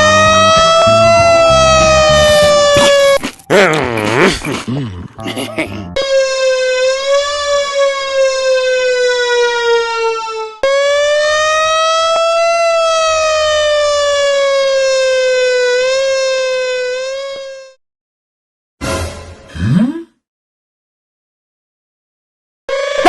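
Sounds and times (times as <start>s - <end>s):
fire truck siren wailing: 0.0s - 3.2s, 5.9s - 17.8s, 22.7s - 23.0s.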